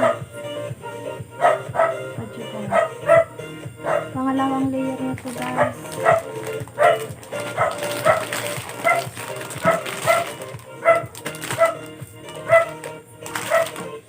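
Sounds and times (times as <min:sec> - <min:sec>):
dog yipping: 0:00.0 - 0:00.3, 0:01.4 - 0:02.1, 0:02.7 - 0:04.1, 0:05.5 - 0:12.8, 0:13.4 - 0:13.8
background music: 0:00.0 - 0:14.0.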